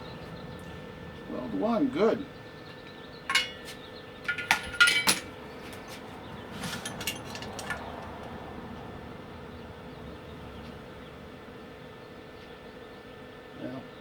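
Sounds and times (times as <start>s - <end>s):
small metal parts clinking: 3.3s - 5.9s, 6.6s - 8.0s.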